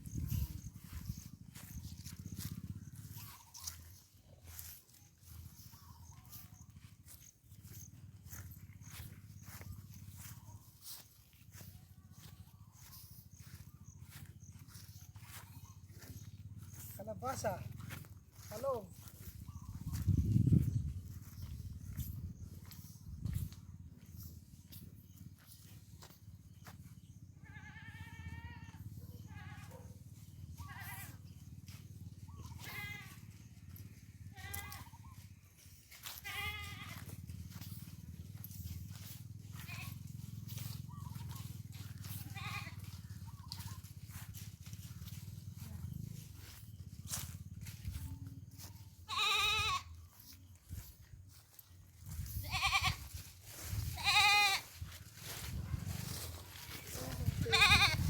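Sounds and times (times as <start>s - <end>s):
goat bleating: 27.4s - 29.8s, 30.6s - 31.2s, 32.5s - 33.3s, 34.3s - 35.0s, 36.2s - 37.1s, 39.5s - 40.2s, 42.1s - 43.0s, 49.0s - 50.0s, 52.4s - 53.1s, 53.9s - 54.7s, 57.3s - 58.0s.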